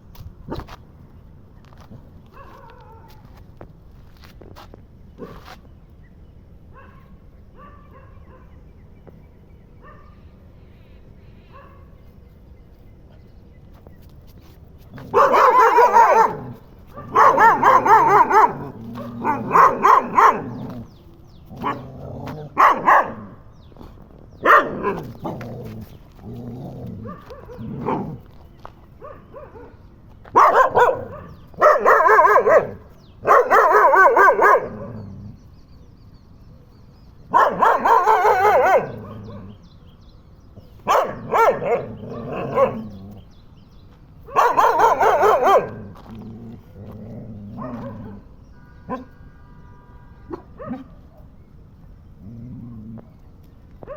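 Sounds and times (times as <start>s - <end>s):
dog barking: 2.3s - 3.2s, 6.7s - 8.6s, 9.8s - 10.2s, 11.5s - 12.0s, 15.0s - 20.9s, 21.6s - 23.4s, 24.4s - 25.3s, 27.0s - 28.2s, 29.0s - 35.1s, 37.3s - 39.6s, 40.8s - 42.9s, 44.3s - 46.0s, 47.6s - 48.3s, 48.9s - 49.2s, 50.3s - 51.2s.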